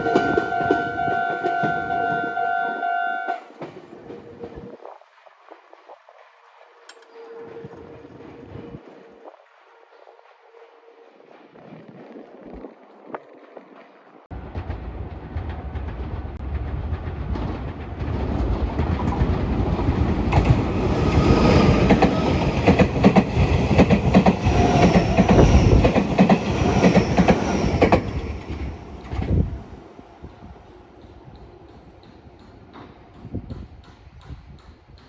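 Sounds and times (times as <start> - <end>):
electric train passing: 0.0 - 4.8, 6.7 - 34.6
wheels clacking over rail joints: 15.3 - 29.7.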